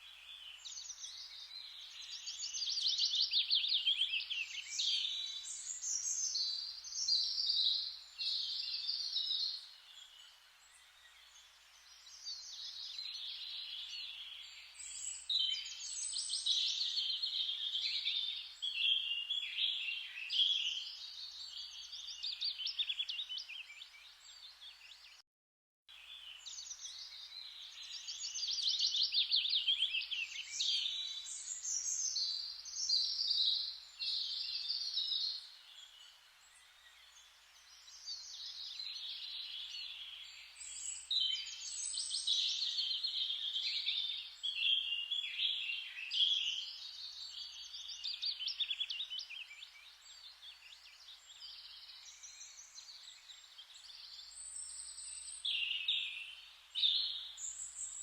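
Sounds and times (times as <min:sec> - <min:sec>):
songbirds chirping and singing: 0:00.0 - 0:25.2, 0:26.0 - 0:58.0.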